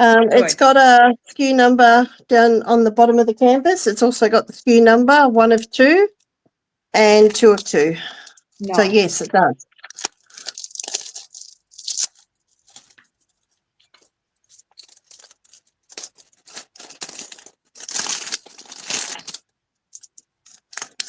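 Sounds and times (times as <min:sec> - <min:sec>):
plastic bags crinkling: 0:07.3 - 0:21.0.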